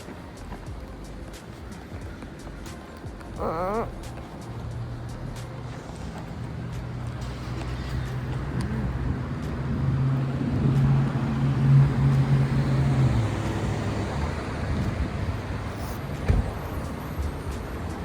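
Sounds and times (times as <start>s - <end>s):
vehicle engine humming: 0.0s - 18.0s
thump: 16.2s - 16.6s.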